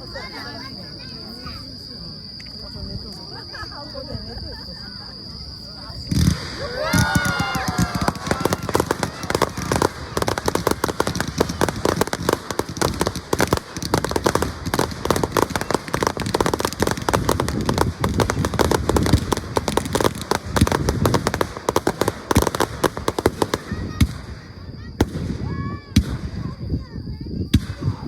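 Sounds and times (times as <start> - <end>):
fireworks crackling and banging: 6.0 - 28.0.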